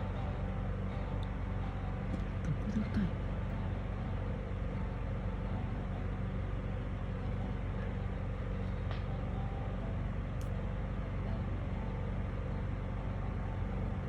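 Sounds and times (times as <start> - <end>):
low mechanical hum: 0.0 - 14.0
faint tick: 1.2 - 1.4.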